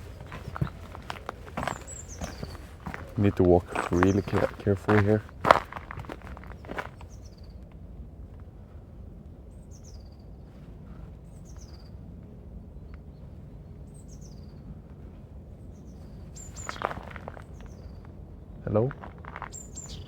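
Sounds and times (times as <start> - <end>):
songbird calling: 0.0 - 5.7, 15.7 - 20.0
low background rumble: 0.0 - 20.0.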